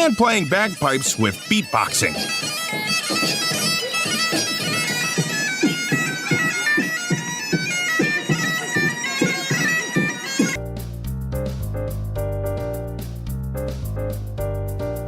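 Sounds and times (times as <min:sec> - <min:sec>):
bagpipes playing a melody: 0:00.0 - 0:10.6
different music: 0:00.0 - 0:15.0.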